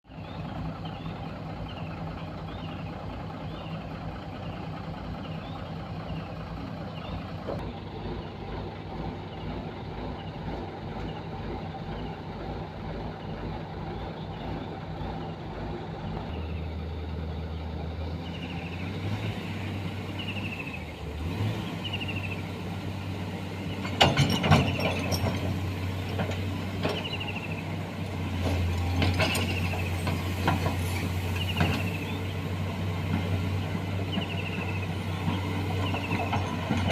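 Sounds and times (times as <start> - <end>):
excavator diesel engine running: 0.1 - 36.9
loud metallic clanks: 23.7 - 27.2.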